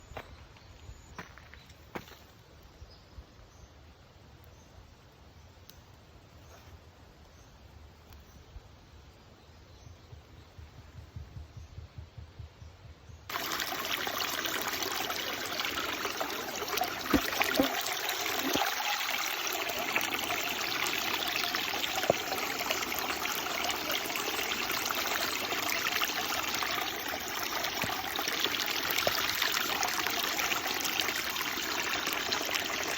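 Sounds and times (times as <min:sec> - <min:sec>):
stream water trickling: 0:13.3 - 0:32.9
water splashes: 0:13.3 - 0:32.9.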